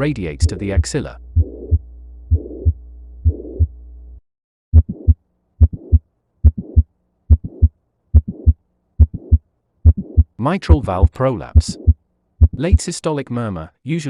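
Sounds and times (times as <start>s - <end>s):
low steady hum: 0.0s - 4.2s
heartbeat through stethoscope: 0.4s - 0.6s, 1.4s - 3.8s, 4.7s - 10.4s, 11.6s - 12.9s
heart valve click: 1.4s - 3.7s, 4.8s - 10.3s, 11.6s - 12.9s
blowing heart murmur: 1.4s - 3.8s, 4.7s - 10.4s.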